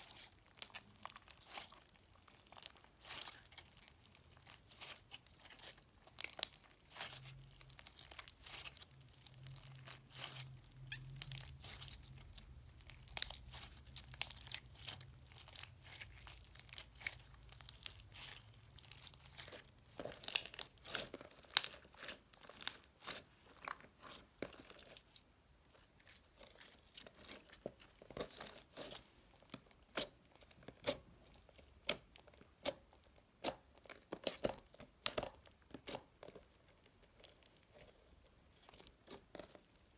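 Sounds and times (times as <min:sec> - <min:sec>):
slime beads crackling and crunching: 0:00.0 - 0:25.2.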